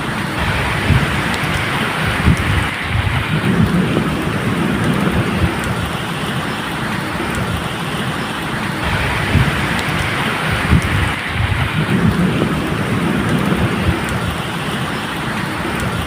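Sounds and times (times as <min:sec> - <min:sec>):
rolling thunder: 0:00.0 - 0:08.0, 0:08.7 - 0:16.0
rain hissing: 0:00.0 - 0:16.0.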